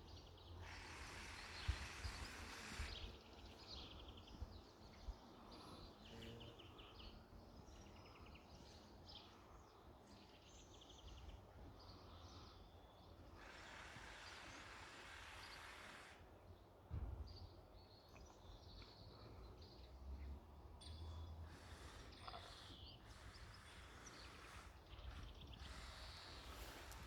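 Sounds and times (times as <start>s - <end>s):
songbirds chirping and trilling: 0.0s - 27.0s.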